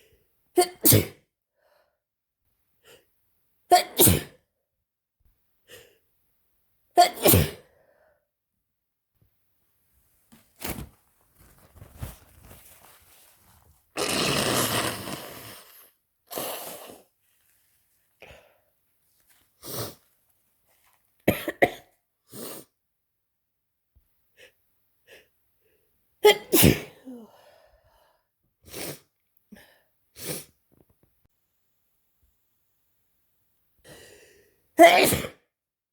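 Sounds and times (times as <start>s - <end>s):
person sneezing: 0.6s - 1.2s, 3.7s - 4.4s, 7.0s - 7.7s, 14.0s - 17.1s, 26.2s - 27.4s, 34.8s - 35.4s.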